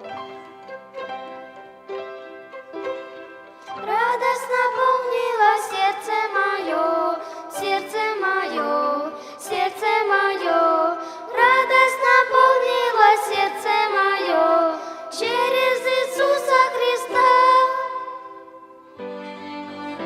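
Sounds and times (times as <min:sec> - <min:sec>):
violin ensemble: 0:00.0 - 0:20.0
voices singing a hymn: 0:03.8 - 0:18.6.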